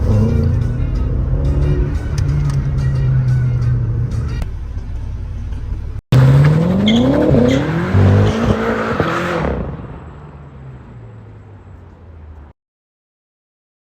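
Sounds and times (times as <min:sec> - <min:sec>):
car engine accelerating hard: 0:00.0 - 0:04.4, 0:06.2 - 0:10.1.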